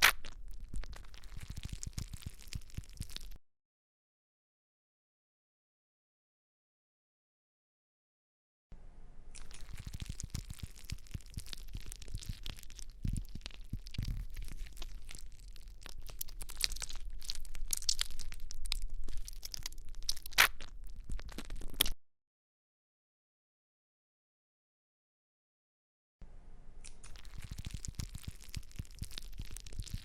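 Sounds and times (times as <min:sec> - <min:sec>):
sharp snaps: 0:00.0 - 0:03.4, 0:09.3 - 0:22.0
slime squishing with crackling pops: 0:00.0 - 0:03.4, 0:09.4 - 0:22.0, 0:26.8 - 0:30.0.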